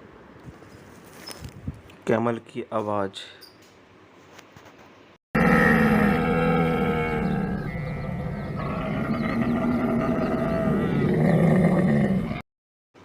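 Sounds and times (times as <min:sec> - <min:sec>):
camel calling: 0:05.4 - 0:12.4.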